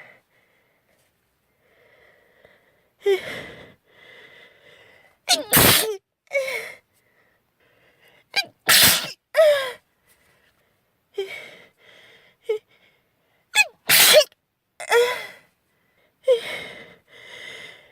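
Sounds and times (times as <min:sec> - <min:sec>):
girl sneezing: 0:05.3 - 0:06.0, 0:08.4 - 0:09.2, 0:13.6 - 0:14.3
sharp gasping intakes: 0:15.0 - 0:17.9.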